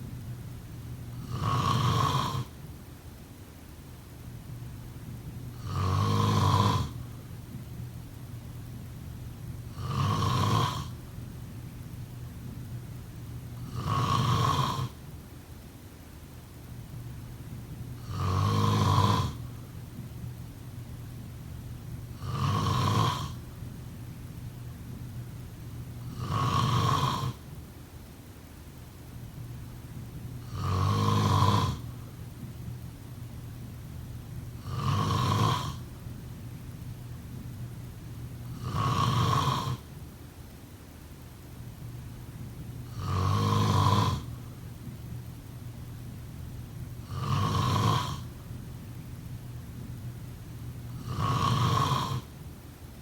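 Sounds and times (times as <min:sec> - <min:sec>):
person snoring: 0:01.2 - 0:02.6, 0:05.6 - 0:07.0, 0:09.7 - 0:11.0, 0:13.6 - 0:15.0, 0:18.0 - 0:19.5, 0:22.2 - 0:23.4, 0:26.0 - 0:27.4, 0:30.4 - 0:32.0, 0:34.6 - 0:35.8, 0:38.4 - 0:39.9, 0:42.9 - 0:44.4, 0:47.0 - 0:48.4, 0:50.9 - 0:52.3.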